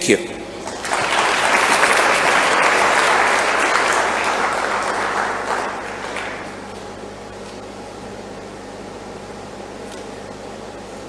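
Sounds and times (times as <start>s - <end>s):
audience applauding: 0.6s - 6.9s.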